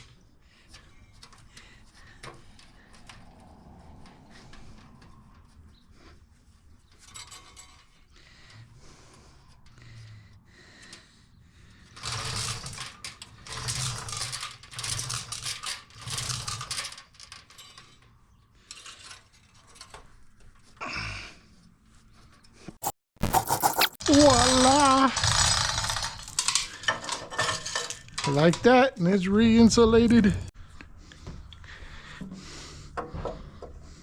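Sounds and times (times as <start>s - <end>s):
rough scraping strokes: 22.8s - 24.0s.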